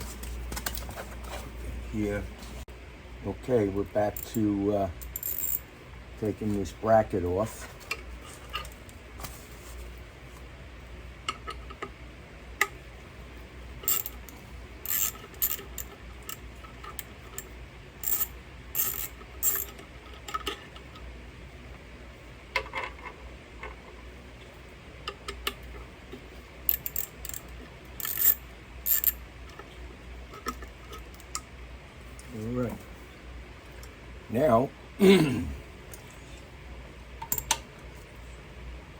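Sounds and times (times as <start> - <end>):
metal hardware clicking and clinking: 4.2 - 5.6, 13.8 - 20.6, 26.7 - 29.6, 37.2 - 37.7.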